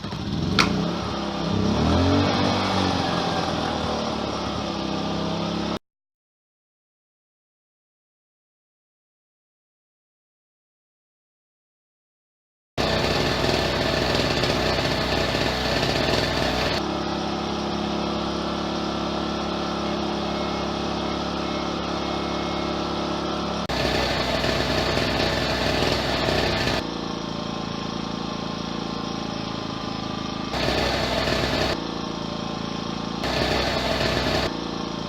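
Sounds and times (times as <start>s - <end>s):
loud two-stroke generator running: 12.8s - 35.0s.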